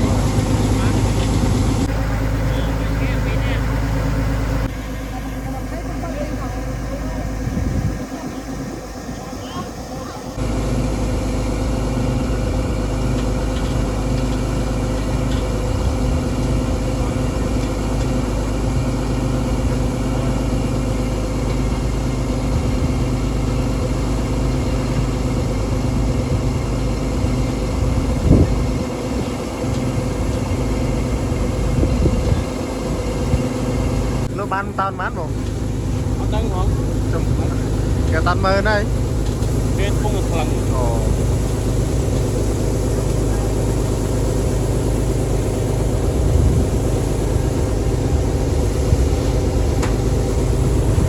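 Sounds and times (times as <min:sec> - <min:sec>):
engine running under load: 0:00.0 - 0:51.0.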